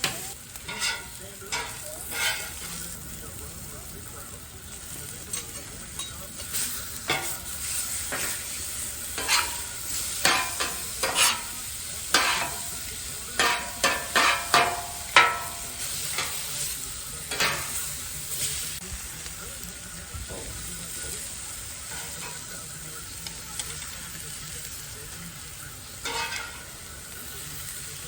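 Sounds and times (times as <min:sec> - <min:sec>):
utensil scraping a pan: 0:00.0 - 0:03.4, 0:04.7 - 0:18.8, 0:25.8 - 0:28.0
food sizzling in a hot pan: 0:00.0 - 0:28.0.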